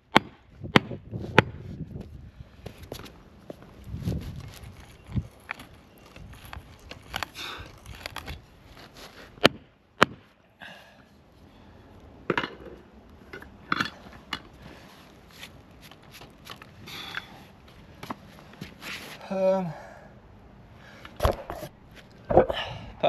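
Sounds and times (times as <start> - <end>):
scrapes and rustles: 1.2 - 9.4, 14.0 - 16.8, 17.7 - 19.2.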